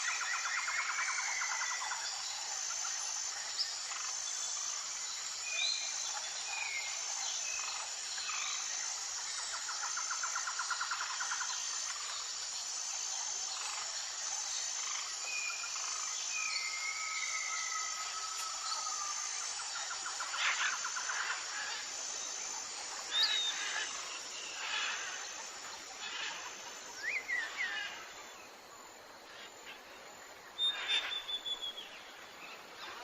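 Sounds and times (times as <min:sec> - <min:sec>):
pulsing high insect buzz: 0:00.0 - 0:31.2
insects chorus: 0:00.0 - 0:33.0.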